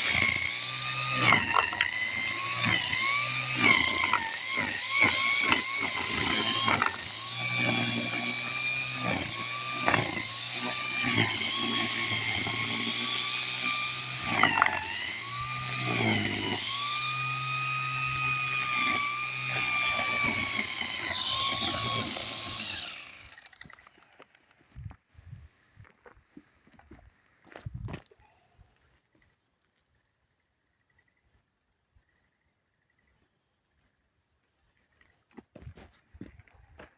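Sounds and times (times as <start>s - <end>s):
electric grass trimmer whine: 0.0s - 24.6s.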